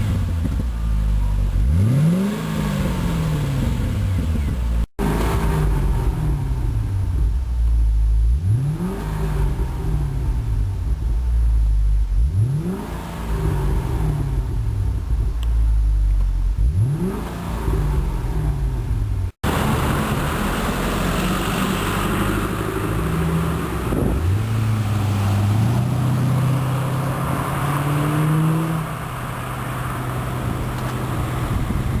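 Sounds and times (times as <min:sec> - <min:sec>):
car engine revving: 0:00.0 - 0:32.0
road and wind rush: 0:00.0 - 0:32.0.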